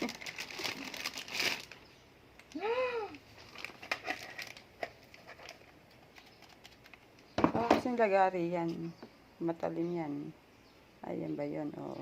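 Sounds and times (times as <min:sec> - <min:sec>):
plastic packaging crinkling: 0:00.0 - 0:02.0, 0:03.3 - 0:07.2.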